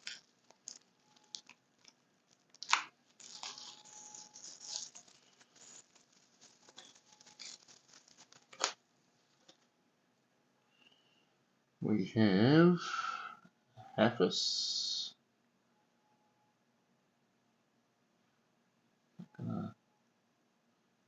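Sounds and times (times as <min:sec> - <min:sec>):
watches rustling and clicking: 0:00.0 - 0:09.7.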